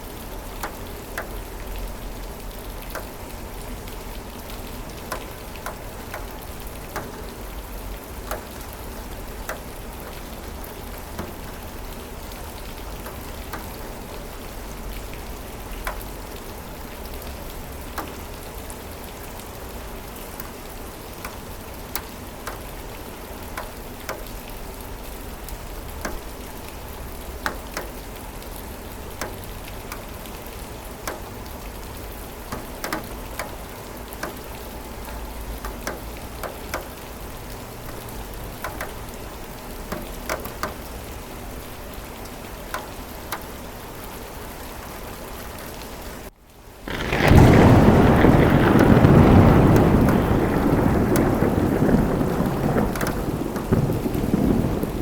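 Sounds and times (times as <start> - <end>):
steady rain hiss: 0.0 - 55.0
raindrop taps: 0.5 - 18.6, 21.2 - 24.9, 25.5 - 31.5, 32.4 - 39.2, 39.8 - 40.8, 42.7 - 43.5, 46.9 - 55.0.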